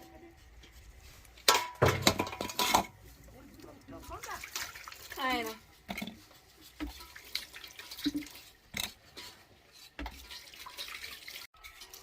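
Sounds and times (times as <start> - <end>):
water splashing: 3.2 - 12.0.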